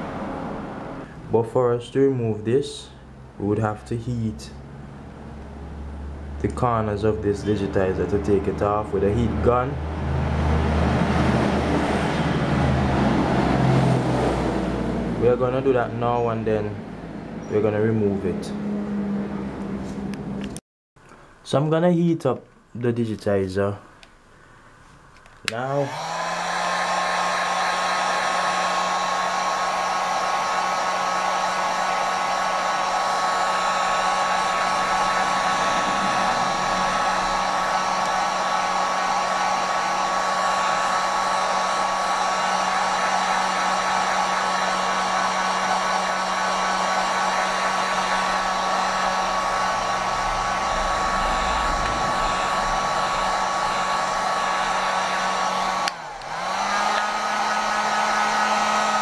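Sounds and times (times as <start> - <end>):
heat gun fan whine: 25.4 - 59.0.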